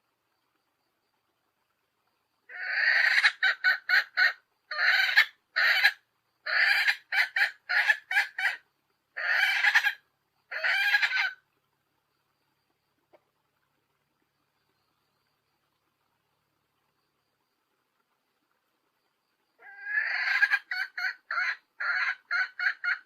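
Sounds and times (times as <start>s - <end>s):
hen calling and clucking: 2.5s - 11.4s, 19.6s - 23.0s.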